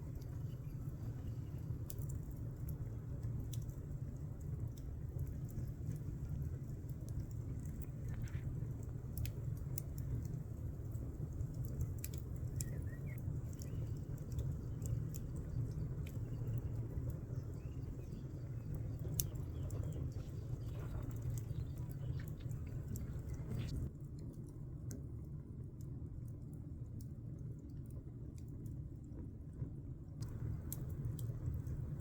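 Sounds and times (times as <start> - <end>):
low wind rumble: 0.0 - 23.9, 29.4 - 32.0
faint bird chirps: 12.5 - 23.8.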